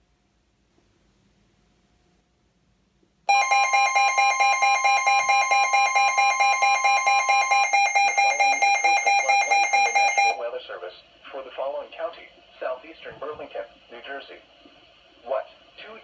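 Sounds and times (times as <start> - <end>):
pulsing electronic alert beep: 3.3 - 10.4
steady alert tone: 3.3 - 10.4.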